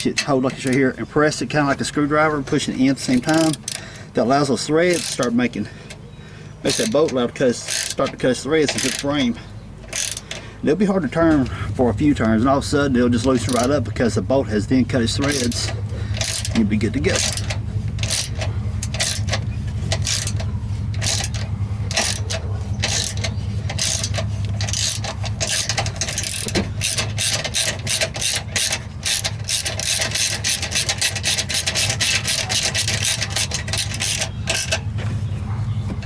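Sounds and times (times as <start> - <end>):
steady low hum: 0.0 - 36.0
socket ratchet clicking: 3.2 - 3.9, 4.8 - 5.5, 6.7 - 10.5, 15.1 - 34.9.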